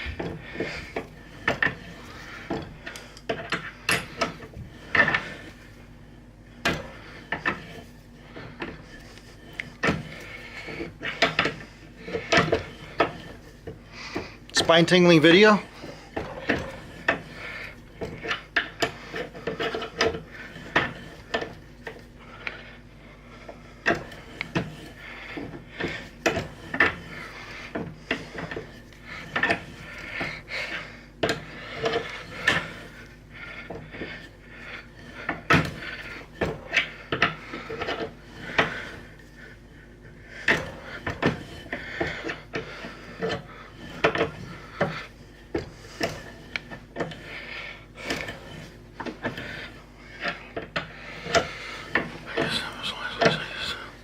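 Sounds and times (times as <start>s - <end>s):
scraping and rubbing on metal: 6.8s - 22.8s, 23.4s - 54.0s.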